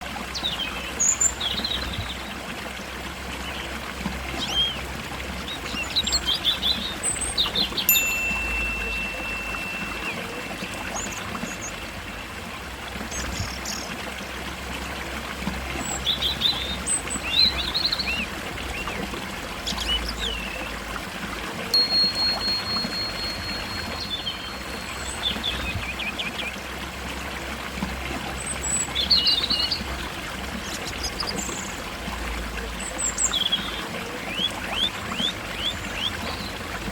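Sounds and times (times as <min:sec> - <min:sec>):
stream trickling: 0:00.0 - 0:36.9
birds chirping: 0:04.4 - 0:12.4, 0:21.8 - 0:26.6.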